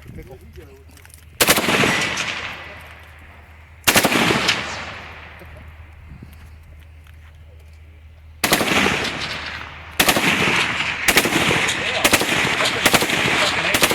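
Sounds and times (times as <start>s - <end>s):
machine guns firing rapidly: 1.4s - 3.0s, 3.8s - 5.5s, 8.4s - 13.9s.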